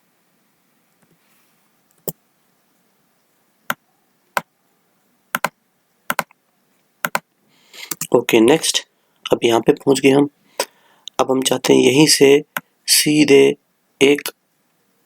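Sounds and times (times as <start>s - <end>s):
computer keys clicking: 6.1s - 6.3s, 7.0s - 7.2s, 7.8s - 8.1s.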